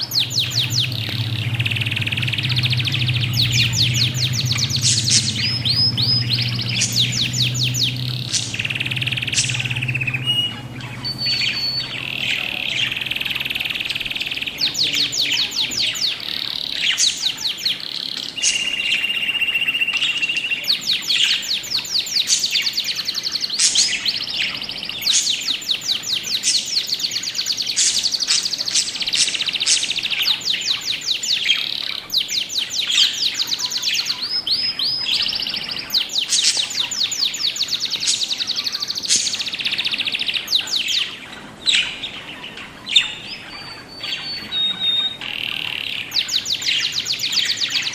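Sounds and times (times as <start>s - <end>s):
low hum: 0.0s - 16.8s
budgerigars chirping in trills: 0.0s - 47.9s.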